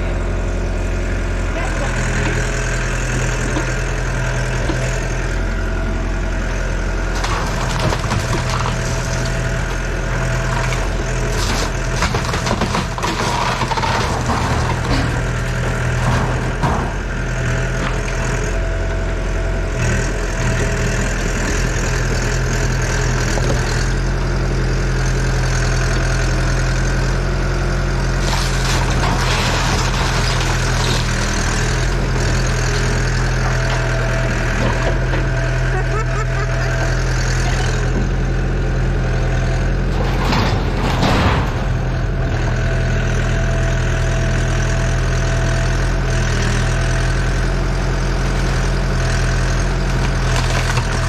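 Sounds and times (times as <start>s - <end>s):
excavator diesel engine running: 0.0s - 51.0s
metal clanks and knocks: 7.2s - 18.3s, 39.8s - 42.6s.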